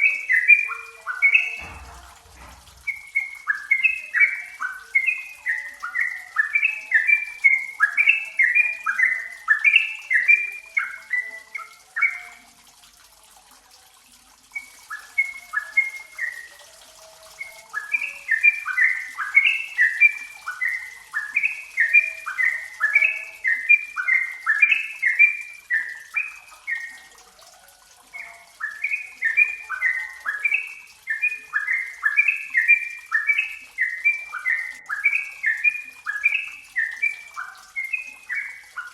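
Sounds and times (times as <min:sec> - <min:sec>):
bulbul chattering song: 0:00.0 - 0:13.4, 0:14.4 - 0:38.9
faint steady hiss: 0:00.0 - 0:38.9.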